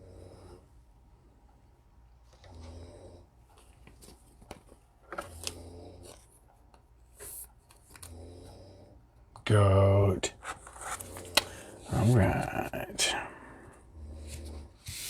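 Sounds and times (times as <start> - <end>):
dog snoring: 2.5 - 3.3, 5.3 - 6.2, 8.1 - 9.0, 13.9 - 14.8
cards being handled: 10.4 - 12.5.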